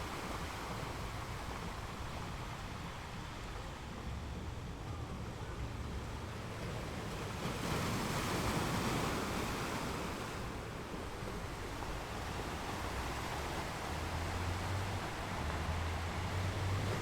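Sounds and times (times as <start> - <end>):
ocean waves breaking on beach: 5.7 - 17.0.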